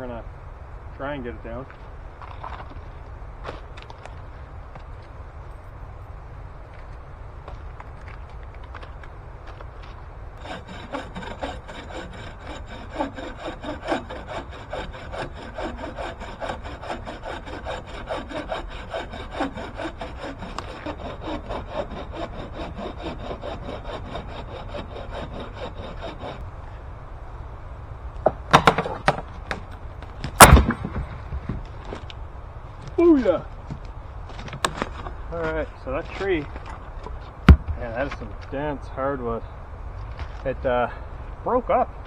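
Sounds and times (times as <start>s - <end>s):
hand saw cutting tree: 10.4s - 26.4s.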